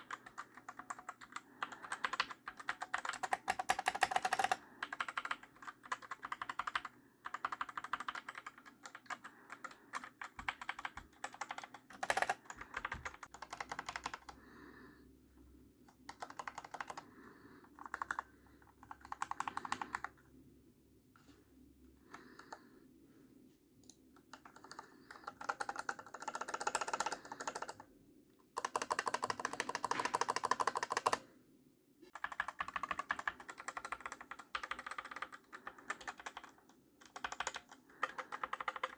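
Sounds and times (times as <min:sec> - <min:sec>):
mechanical keyboard typing: 0:00.0 - 0:14.4, 0:16.0 - 0:17.1, 0:17.8 - 0:20.2, 0:24.2 - 0:27.8, 0:28.6 - 0:31.2, 0:32.1 - 0:38.9.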